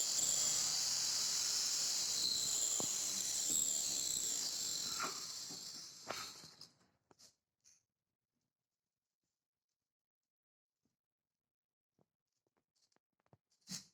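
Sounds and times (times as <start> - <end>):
air tool hissing: 0.0 - 6.5.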